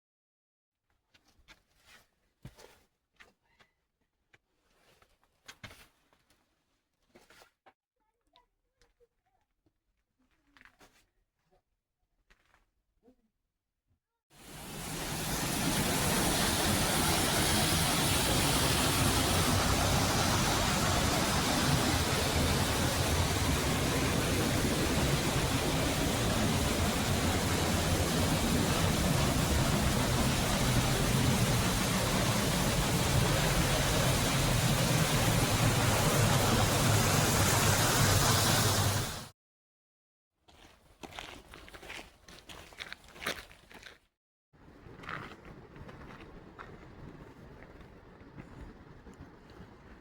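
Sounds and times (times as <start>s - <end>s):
waterfall pouring: 14.4s - 39.3s.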